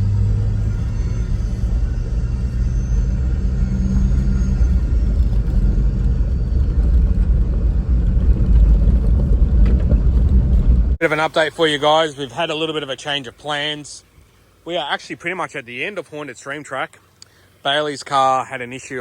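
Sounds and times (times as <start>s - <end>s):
engine hum: 0.0s - 19.0s
tyres rumbling: 0.0s - 19.0s
wind: 0.0s - 19.0s.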